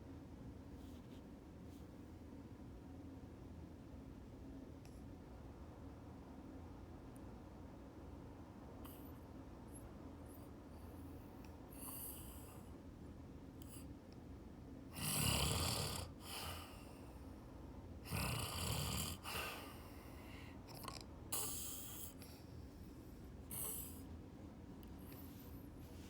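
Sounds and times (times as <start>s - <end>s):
faint breaths: 16.1s - 17.5s, 19.2s - 24.2s, 24.9s - 26.0s.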